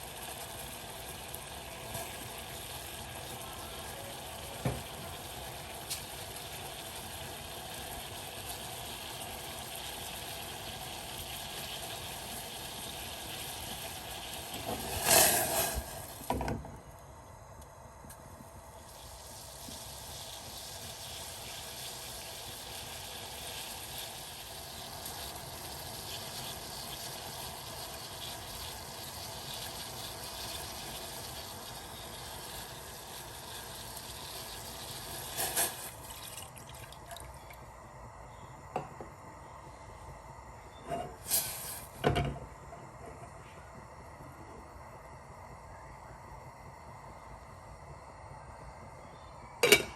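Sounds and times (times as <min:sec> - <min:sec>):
watery hiss of liquid: 0:10.9 - 0:16.3, 0:18.8 - 0:36.4, 0:41.2 - 0:42.0.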